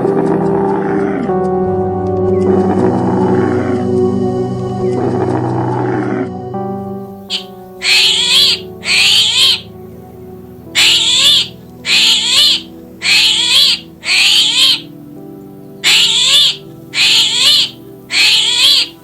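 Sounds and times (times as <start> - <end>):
background music with held chords: 0.0 - 19.0
animal making harsh high calls: 7.3 - 9.7, 10.8 - 14.9, 15.8 - 19.0.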